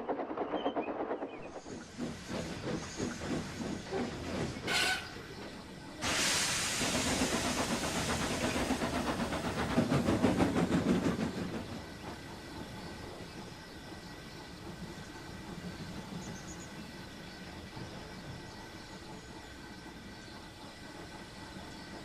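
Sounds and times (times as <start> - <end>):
steam locomotive chuffs: 0.0 - 22.0
hiss of escaping steam: 1.6 - 13.2.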